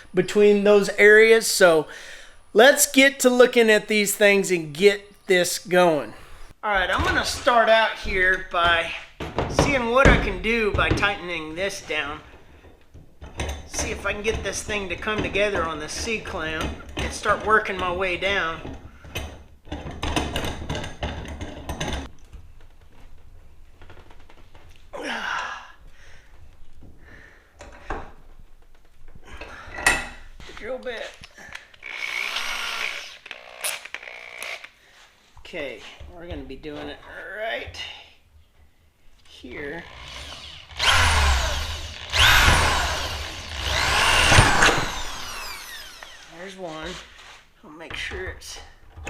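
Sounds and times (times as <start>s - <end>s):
power drill drilling metal: 31.8s - 34.7s, 39.8s - 46.5s.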